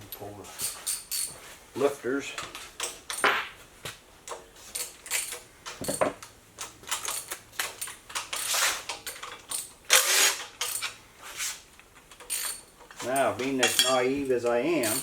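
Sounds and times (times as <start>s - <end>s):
metal parts and tools clinking: 0.0s - 1.6s, 2.3s - 3.5s, 4.2s - 11.0s, 11.9s - 15.0s
scraping rustle: 8.4s - 9.0s, 10.2s - 11.7s.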